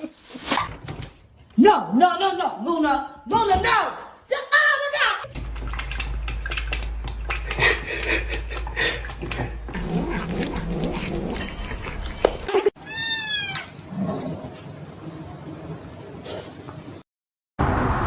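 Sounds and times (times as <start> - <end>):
cat meowing: 12.8 - 13.7
cat yowling: 12.8 - 13.7.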